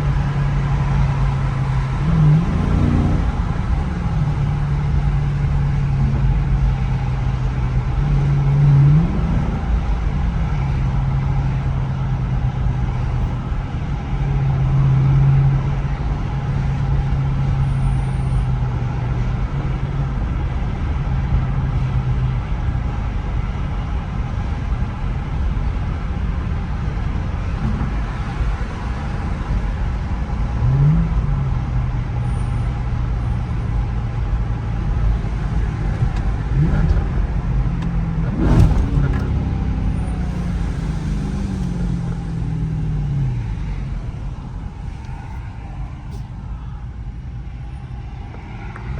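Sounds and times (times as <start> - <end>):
engine revving on downshifts: 0.0 - 11.5, 34.7 - 45.4
car engine drone while driving: 0.0 - 48.9.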